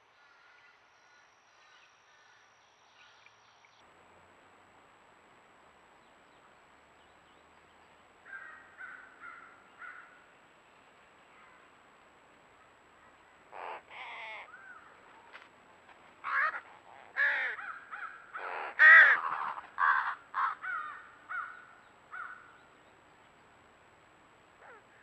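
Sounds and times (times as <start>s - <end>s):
crows cawing: 8.2s - 10.2s, 13.5s - 15.0s, 16.2s - 22.6s.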